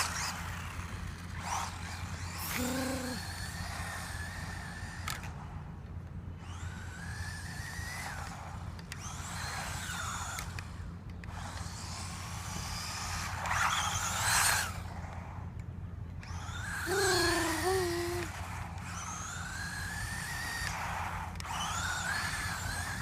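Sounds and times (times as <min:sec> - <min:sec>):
electric motor whining: 0:00.0 - 0:05.4, 0:16.3 - 0:23.0.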